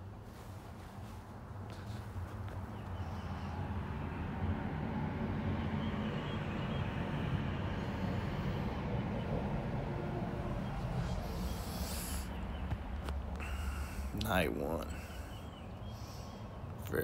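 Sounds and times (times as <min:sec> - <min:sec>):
engine running low rumble: 0:00.0 - 0:17.0.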